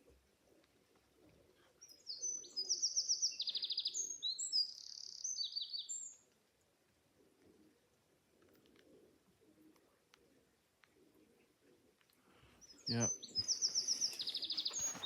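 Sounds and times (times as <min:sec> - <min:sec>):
pigeons cooing: 0:07.2 - 0:12.0, 0:13.1 - 0:15.0
songbird trilling: 0:12.6 - 0:15.0.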